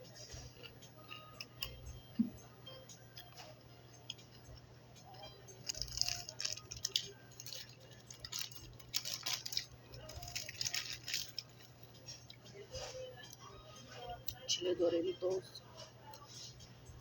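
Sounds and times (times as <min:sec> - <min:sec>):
low steady hum: 0:00.0 - 0:17.0
plastic packaging crinkling: 0:05.6 - 0:12.0.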